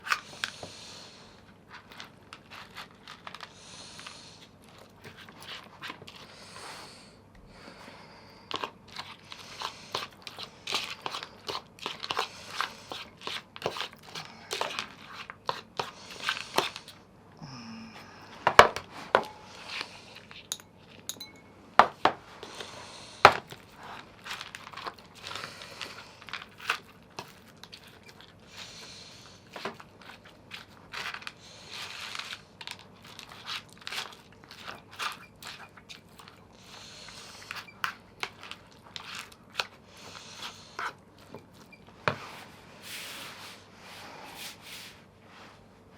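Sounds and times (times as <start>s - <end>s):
plastic packaging crinkling: 23.5s - 28.4s, 29.5s - 36.5s.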